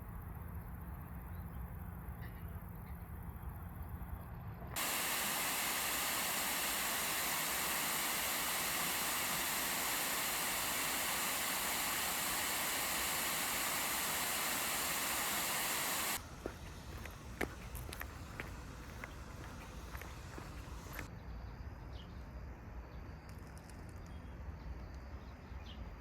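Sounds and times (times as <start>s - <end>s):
hissing rush of noise: 4.8s - 21.1s.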